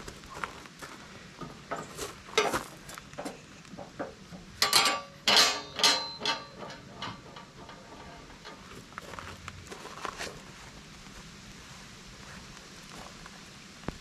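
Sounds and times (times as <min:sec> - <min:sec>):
metal-on-metal clanks: 0:01.4 - 0:09.4.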